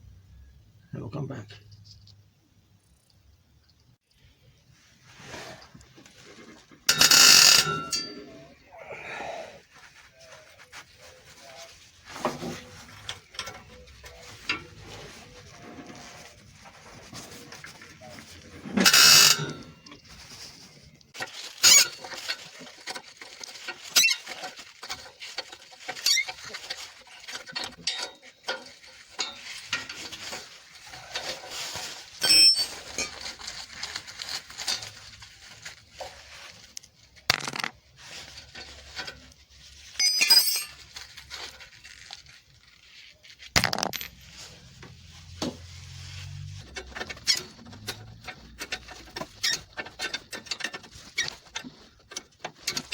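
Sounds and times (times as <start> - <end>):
metal tools clinking and clanking: 6.8 - 8.6, 12.2 - 16.2, 17.1 - 20.1, 21.2 - 31.6, 32.2 - 33.4, 40.0 - 41.6.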